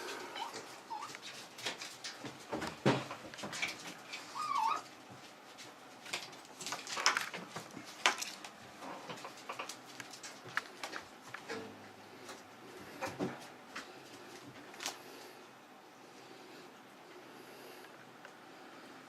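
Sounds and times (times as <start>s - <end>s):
pets scuffling and scratching: 0.0s - 15.4s
pet squealing: 0.3s - 1.2s, 4.2s - 4.9s.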